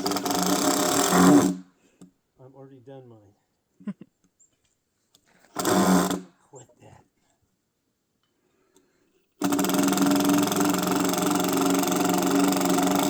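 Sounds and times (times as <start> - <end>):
power driver driving screw into wood: 0.0 - 1.7, 5.5 - 6.3, 9.4 - 13.0.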